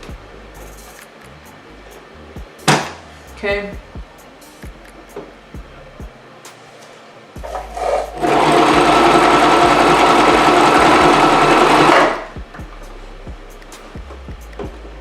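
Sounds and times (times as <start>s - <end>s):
electric sewing machine stitching: 7.8s - 12.3s.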